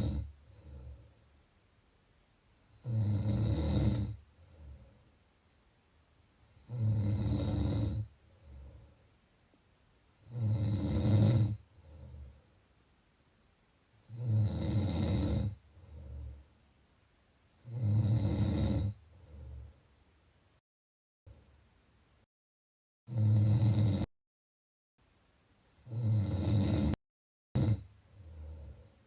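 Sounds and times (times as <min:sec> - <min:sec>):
person snoring: 0:00.0 - 0:01.1, 0:02.7 - 0:05.0, 0:06.5 - 0:08.9, 0:10.2 - 0:12.4, 0:14.0 - 0:16.4, 0:17.6 - 0:19.7, 0:23.1 - 0:24.1, 0:25.8 - 0:27.0, 0:27.6 - 0:28.9.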